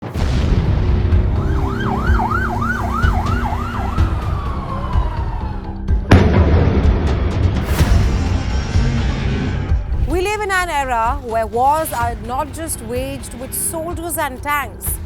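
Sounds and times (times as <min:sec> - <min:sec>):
sudden loud hit: 0:00.0 - 0:01.7, 0:06.1 - 0:10.2
emergency siren wailing: 0:01.2 - 0:06.0
steady low rumble: 0:06.1 - 0:13.4.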